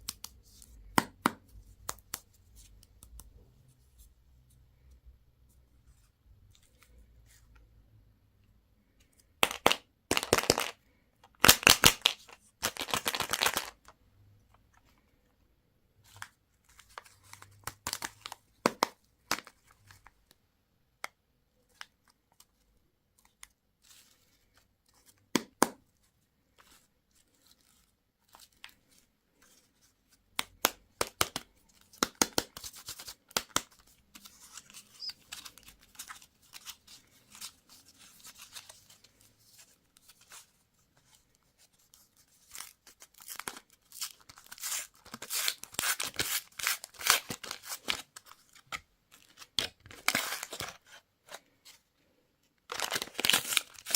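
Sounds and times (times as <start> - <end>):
packaging tearing: 52.7 - 53.9.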